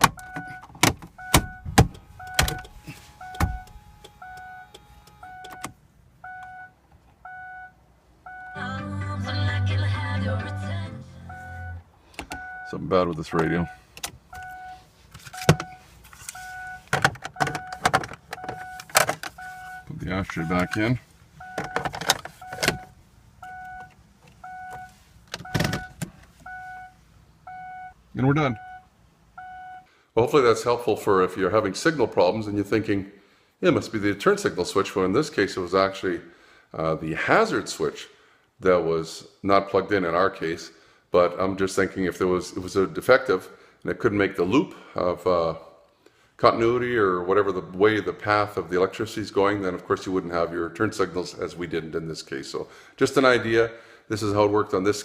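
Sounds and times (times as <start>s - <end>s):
car warning chime beeping: 0.0s - 9.0s, 10.4s - 29.9s.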